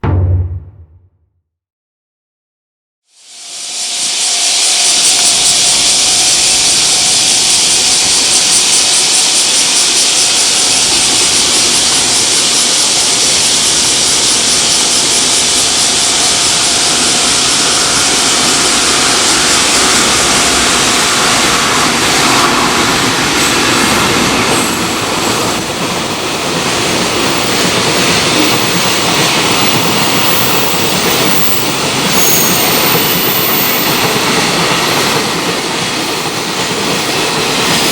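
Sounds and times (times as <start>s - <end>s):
steady tone: 0.0s - 1.2s
train wheels rushing on rail: 3.6s - 37.9s.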